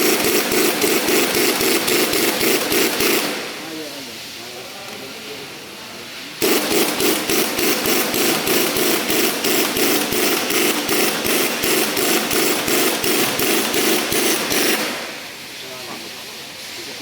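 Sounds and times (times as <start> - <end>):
rapid regular hammering: 0.0 - 3.7, 6.4 - 15.4.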